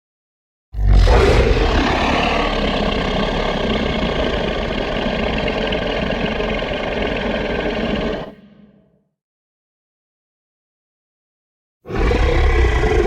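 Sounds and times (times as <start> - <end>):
deep creature growl: 0.8 - 9.0, 11.9 - 13.0.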